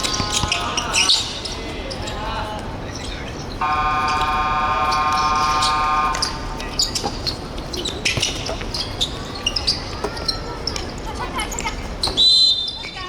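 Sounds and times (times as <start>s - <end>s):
ball bouncing on court floor: 0.0s - 0.8s
sneakers squeaking: 0.0s - 13.0s
electronic game buzzer: 3.6s - 6.6s.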